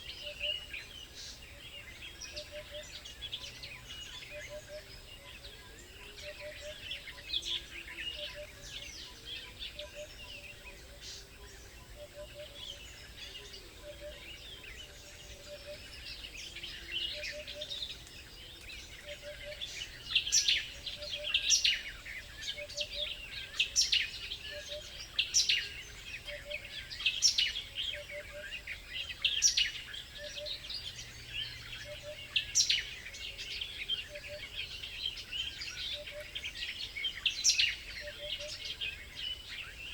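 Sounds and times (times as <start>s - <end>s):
small birds chirping: 0.0s - 39.9s.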